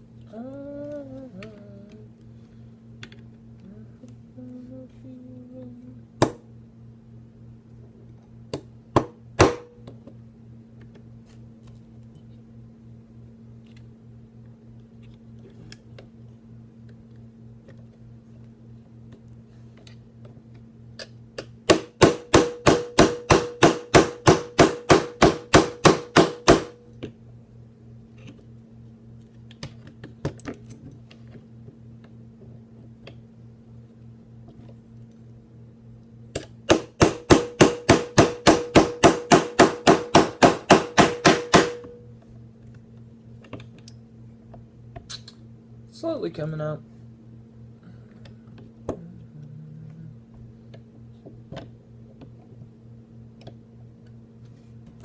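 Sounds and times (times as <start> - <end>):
hammer tapping metal punch: 21.0 - 26.8, 36.3 - 42.1.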